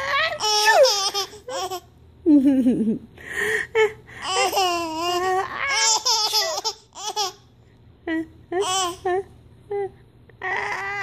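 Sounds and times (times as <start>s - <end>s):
baby laughing: 0.0s - 2.0s, 3.8s - 7.5s, 8.5s - 9.4s.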